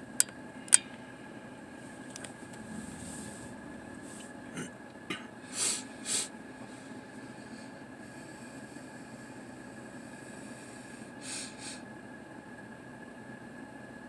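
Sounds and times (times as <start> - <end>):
faint high whine: 0.0 - 12.9
breathy nose sniffs: 2.4 - 9.4, 10.1 - 11.8.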